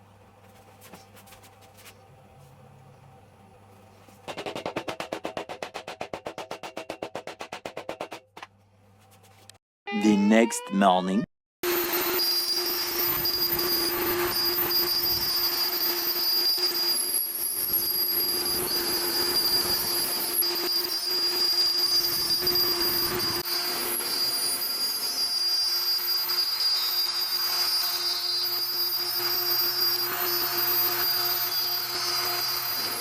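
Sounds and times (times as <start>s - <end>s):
router spindle high whine: 11.7s - 33.0s.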